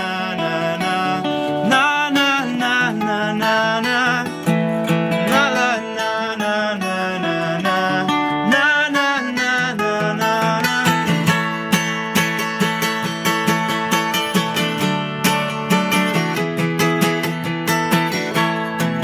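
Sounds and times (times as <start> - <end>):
man singing: 0.0 - 12.5
strummed acoustic guitar: 0.0 - 19.0.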